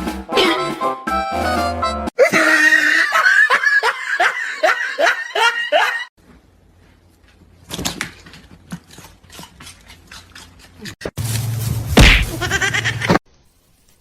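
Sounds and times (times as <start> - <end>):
person laughing hard: 2.2 - 6.1, 12.0 - 13.2
noisy thump: 11.9 - 12.4.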